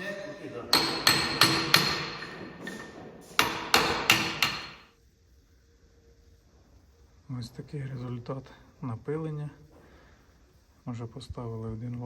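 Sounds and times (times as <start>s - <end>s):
hammer striking metal: 0.7s - 4.9s.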